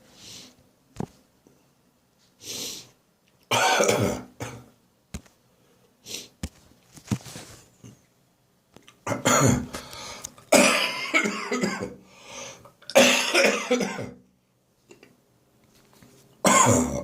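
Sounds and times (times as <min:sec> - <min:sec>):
person breathing: 0:00.0 - 0:00.6, 0:02.4 - 0:03.0, 0:09.7 - 0:10.4, 0:12.0 - 0:12.8
person coughing: 0:03.5 - 0:04.7, 0:09.1 - 0:09.7, 0:10.5 - 0:12.0, 0:12.9 - 0:14.2, 0:16.4 - 0:17.0.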